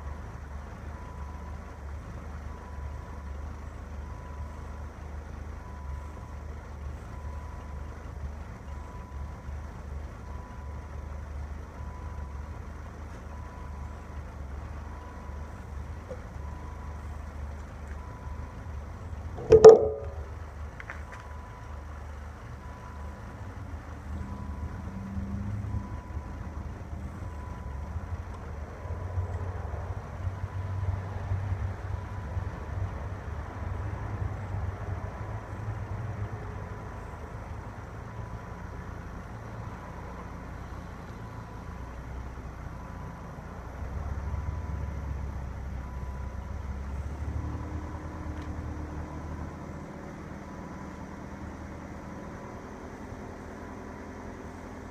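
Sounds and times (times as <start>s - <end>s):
diesel engine rumble: 0.0s - 54.9s
sharp knock: 19.4s - 20.3s
chime beeping: 19.4s - 20.4s.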